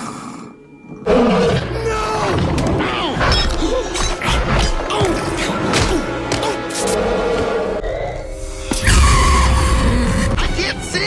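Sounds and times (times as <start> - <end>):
dramatic film soundtrack: 0.0 - 11.0.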